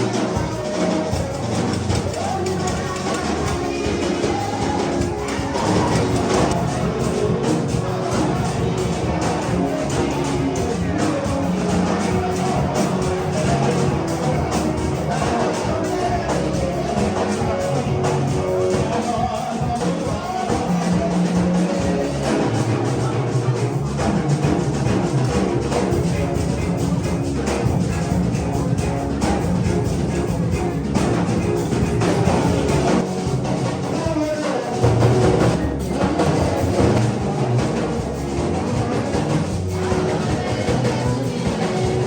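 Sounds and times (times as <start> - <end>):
guitar music with steady beat: 0.0 - 42.0.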